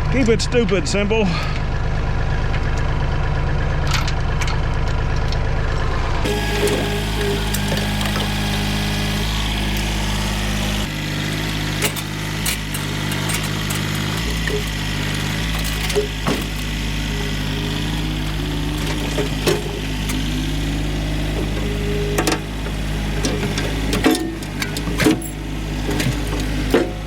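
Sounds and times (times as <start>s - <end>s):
tractor engine idling: 0.0s - 27.0s
metallic clanks and knocks: 11.1s - 27.0s.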